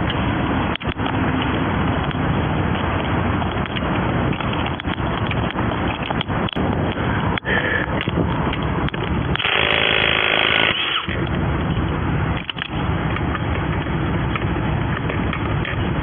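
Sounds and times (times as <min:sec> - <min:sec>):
roadside traffic: 0:00.0 - 0:16.0
impact wrench on lug nuts: 0:09.3 - 0:11.2.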